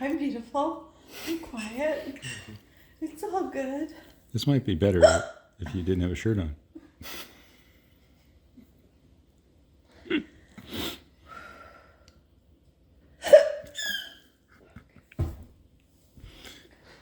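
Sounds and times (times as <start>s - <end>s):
person hiccuping: 5.0s - 5.4s.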